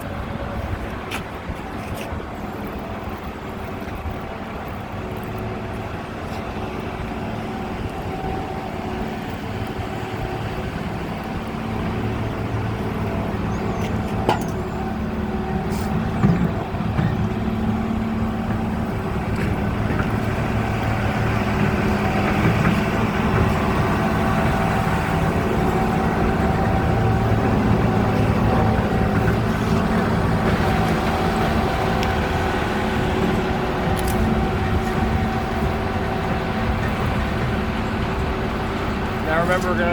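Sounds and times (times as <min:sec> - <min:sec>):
motor humming: 0:09.3 - 0:39.9.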